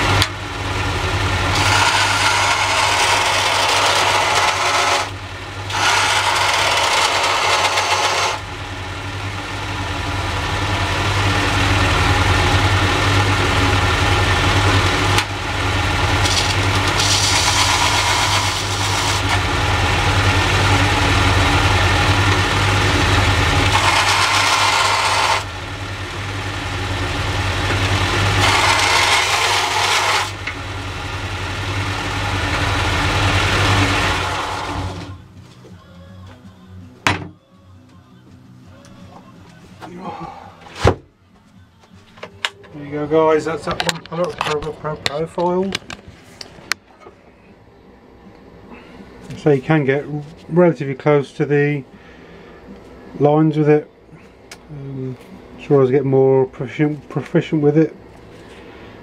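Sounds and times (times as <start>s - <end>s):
bandsaw motor hum: 0.0s - 36.4s
bandsaw blade cutting steel: 1.5s - 8.4s, 16.1s - 19.5s, 23.6s - 25.5s, 28.2s - 30.5s.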